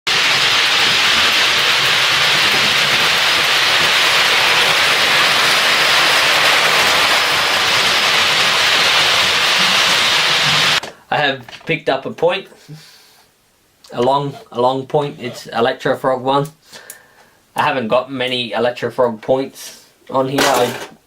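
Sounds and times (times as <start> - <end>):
loud rushing hiss: 0.1 - 10.8.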